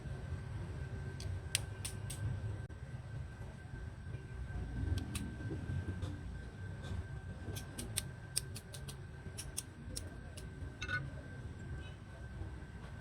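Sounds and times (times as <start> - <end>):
sharp clicks and taps: 7.6 - 10.5.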